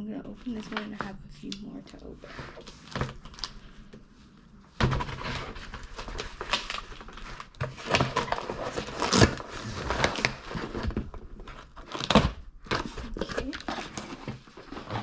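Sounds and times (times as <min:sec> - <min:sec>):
packaging rustling and tearing: 0:02.2 - 0:04.0, 0:04.8 - 0:15.0.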